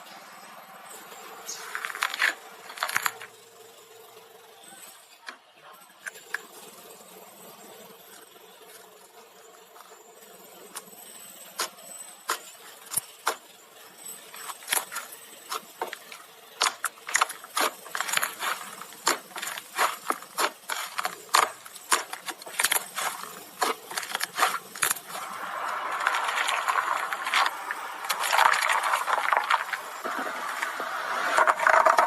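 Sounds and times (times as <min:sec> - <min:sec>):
slime popping and crackling: 0:16.6 - 0:32.0.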